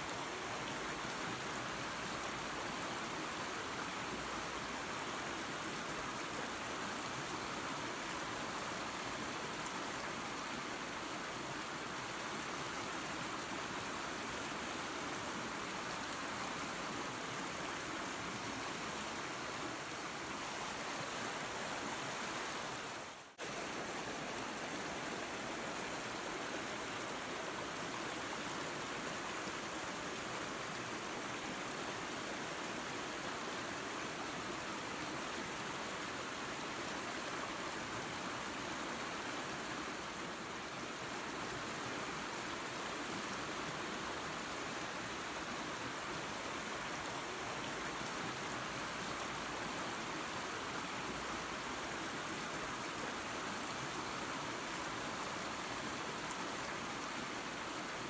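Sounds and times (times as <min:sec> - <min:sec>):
waterfall and creek rushing: 0:00.0 - 0:58.0.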